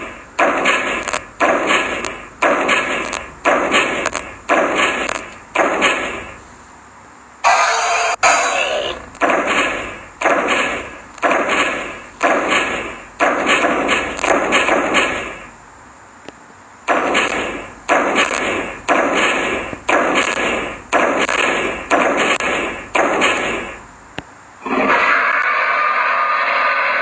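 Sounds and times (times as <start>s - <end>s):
heavy ringing bangs: 7.4s - 15.6s.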